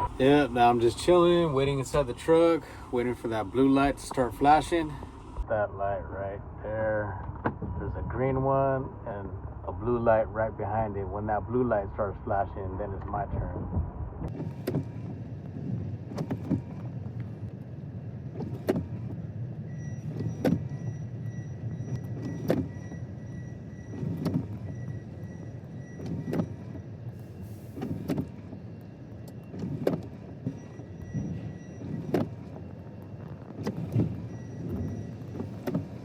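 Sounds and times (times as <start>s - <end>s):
heavy rain: 0.0s - 5.4s
low rumble inside truck cab: 0.0s - 36.0s
windshield wipers knocking: 33.6s - 36.0s.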